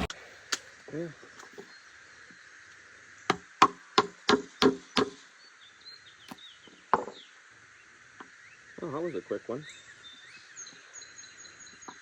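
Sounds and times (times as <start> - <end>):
tool knocking on wood: 3.3 - 5.2.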